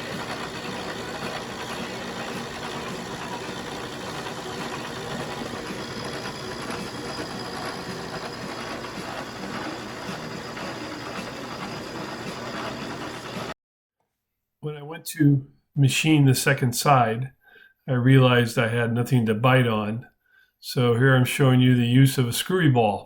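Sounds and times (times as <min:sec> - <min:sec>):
milling machine cutting metal: 0:00.0 - 0:13.6.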